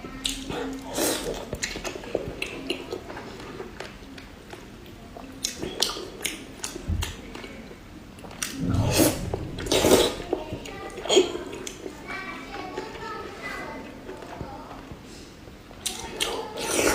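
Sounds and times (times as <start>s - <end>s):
close chewing with mouth smacks: 0.2s - 7.6s, 15.8s - 16.9s.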